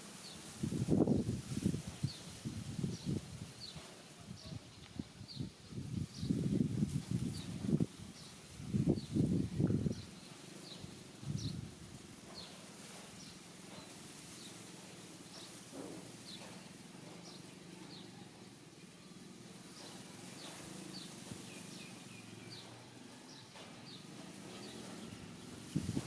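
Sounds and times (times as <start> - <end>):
small bird chirping: 12.3 - 26.0.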